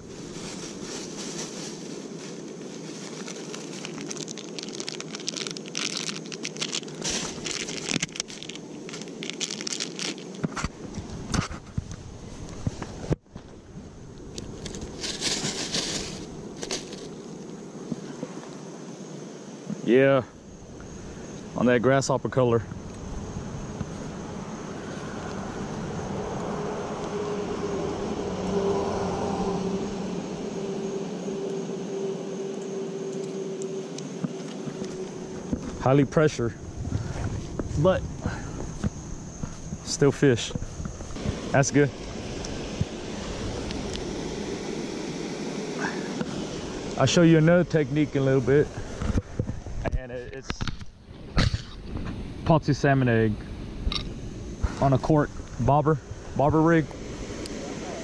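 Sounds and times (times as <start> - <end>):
rustling and crackling handling noise: 0.0 - 13.6, 14.4 - 18.6
continuous rushing noise: 0.0 - 18.8, 21.5 - 58.0
distant engine hum: 0.0 - 58.0.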